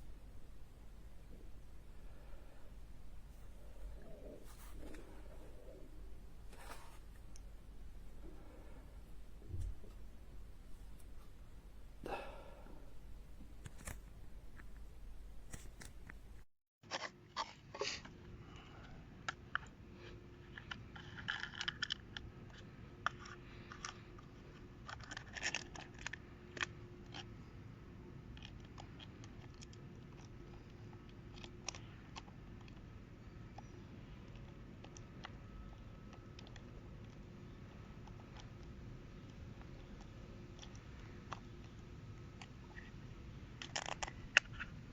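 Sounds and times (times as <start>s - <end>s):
faint crinkling and rustling: 1.3s - 11.4s.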